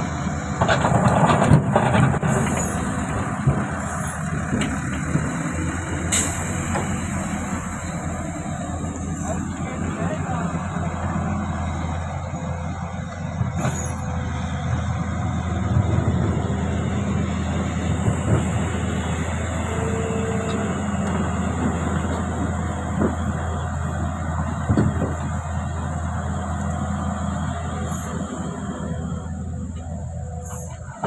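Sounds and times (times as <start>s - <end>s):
excavator diesel engine drone: 0.0s - 31.0s.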